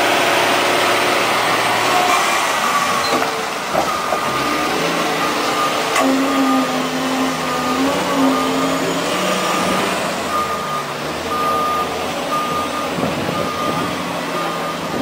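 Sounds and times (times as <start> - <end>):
bulldozer engine running: 0.0 - 15.0
reversing alarm beeping: 3.8 - 15.0.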